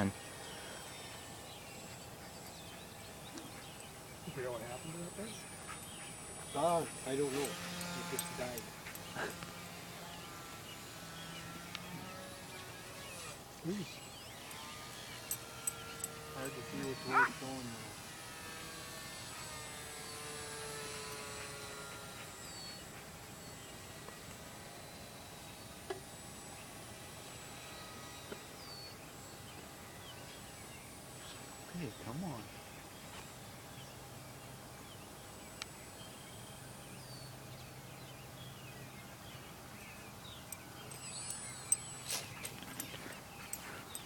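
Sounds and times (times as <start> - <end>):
model airplane motor whine: 0.0 - 31.2
steady low hum: 0.0 - 44.0.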